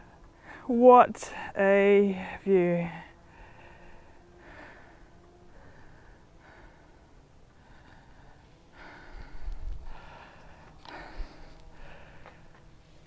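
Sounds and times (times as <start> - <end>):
person breathing hard: 3.2 - 12.6.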